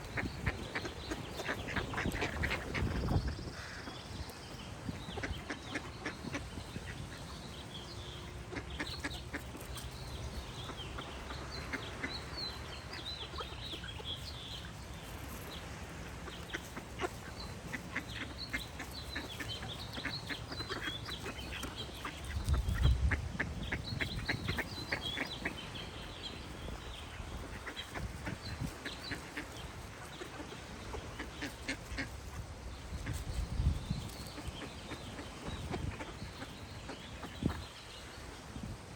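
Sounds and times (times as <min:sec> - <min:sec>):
ducks quacking: 0:00.0 - 0:38.1
songbirds chirping: 0:00.0 - 0:38.9.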